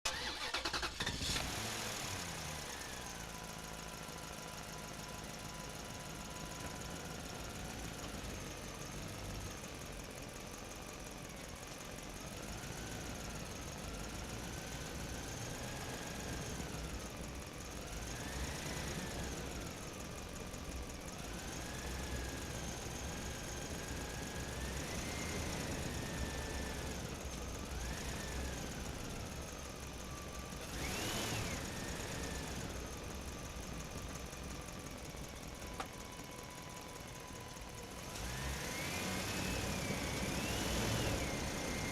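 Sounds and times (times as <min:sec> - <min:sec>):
toy truck electric motor whining: 0:00.1 - 0:01.4.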